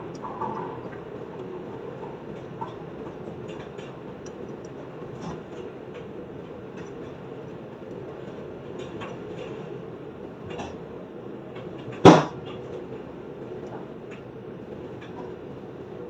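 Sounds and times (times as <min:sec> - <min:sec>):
steady light rain: 0:00.0 - 0:09.6
faint drip ticks: 0:00.1 - 0:06.1.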